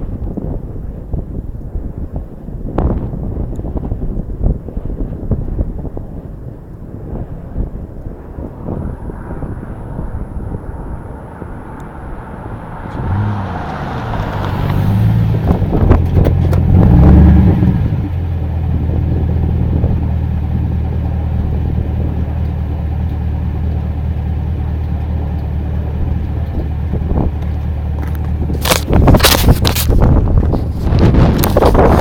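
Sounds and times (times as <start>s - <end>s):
car engine revving: 8.9s - 32.0s.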